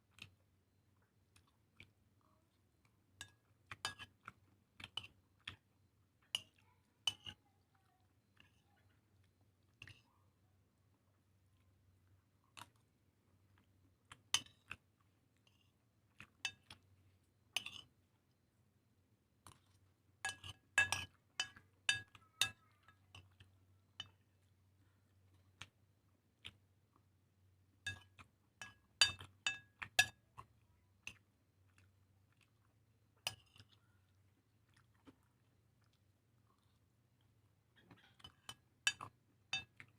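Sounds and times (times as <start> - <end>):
person chewing: 31.7 - 32.7, 34.6 - 39.1.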